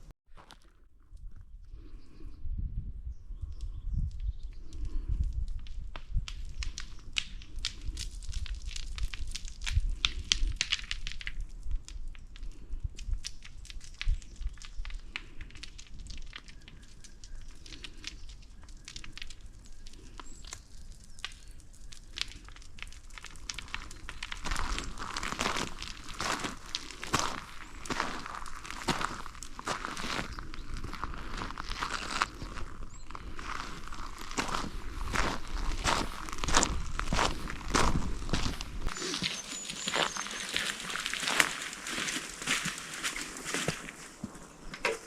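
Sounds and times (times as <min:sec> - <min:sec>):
footsteps crunching on a trail: 0:00.3 - 0:01.4, 0:20.1 - 0:45.0.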